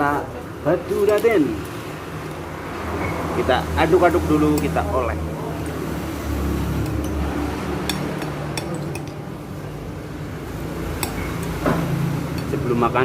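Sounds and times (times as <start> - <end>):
spoon clinking against plate: 7.8 - 9.2.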